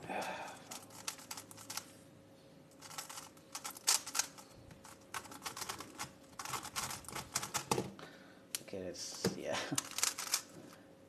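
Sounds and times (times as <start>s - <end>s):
puzzle cube clicking turns: 0.6s - 1.9s, 2.8s - 7.8s, 9.8s - 10.5s.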